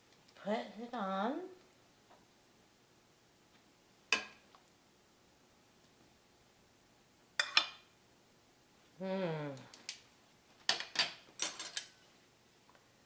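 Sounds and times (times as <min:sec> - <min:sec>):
short vocal hum: 0:09.0 - 0:09.8
utensil clinking against dishes: 0:10.7 - 0:12.0.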